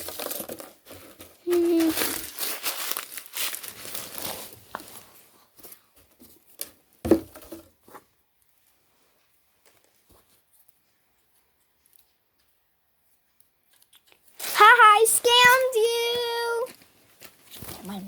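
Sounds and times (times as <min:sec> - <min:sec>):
fidget toys rustling: 0:14.4 - 0:16.7.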